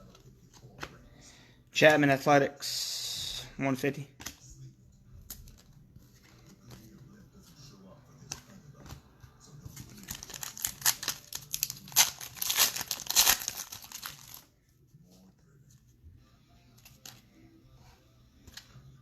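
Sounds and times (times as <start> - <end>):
foil wrapper crinkling and tearing: 9.9 - 14.4.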